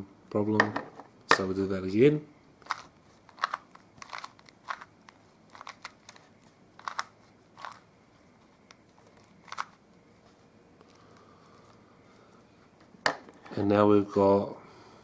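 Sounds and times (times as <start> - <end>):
puzzle cube clicking and scraping: 2.6 - 7.9, 8.5 - 9.8.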